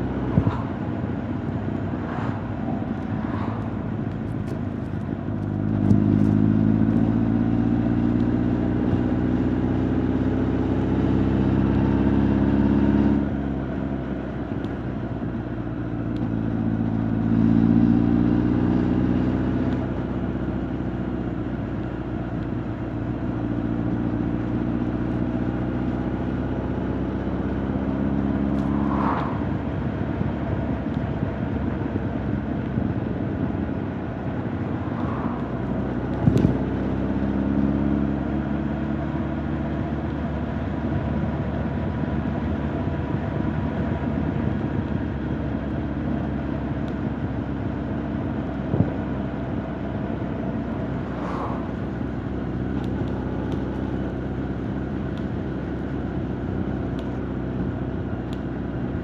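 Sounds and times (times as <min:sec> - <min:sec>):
motorcycle engine and exhaust: 0:00.0 - 0:59.0.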